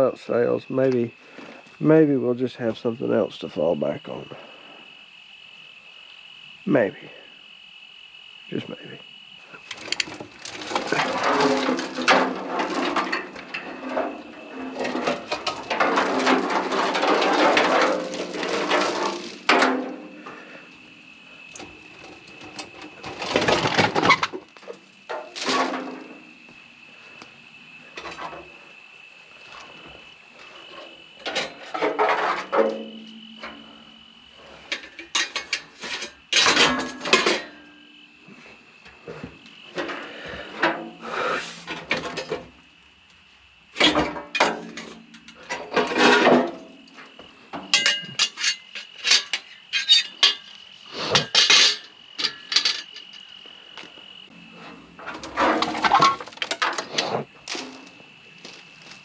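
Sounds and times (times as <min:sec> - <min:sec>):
high insect trill: 0:00.0 - 0:59.0
scrap metal clanking: 0:09.6 - 0:20.7, 0:21.5 - 0:26.3, 0:30.5 - 0:37.8, 0:39.1 - 0:42.6, 0:43.8 - 0:53.3, 0:54.4 - 0:58.0.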